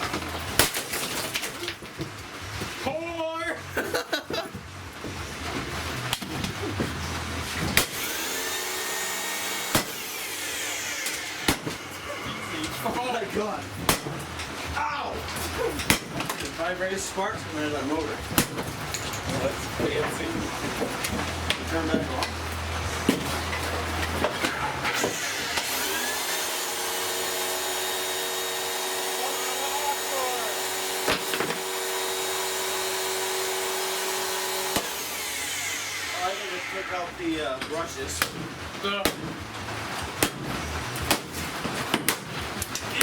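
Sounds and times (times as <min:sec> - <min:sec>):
vacuum cleaner motor whine: 0:25.1 - 0:36.9.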